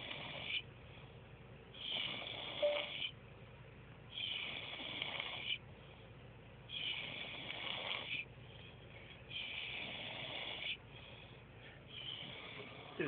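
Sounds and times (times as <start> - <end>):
quiet breaths: 0.0 - 13.0
man snoring: 4.2 - 5.6, 6.8 - 8.2, 9.4 - 10.8, 12.1 - 13.0.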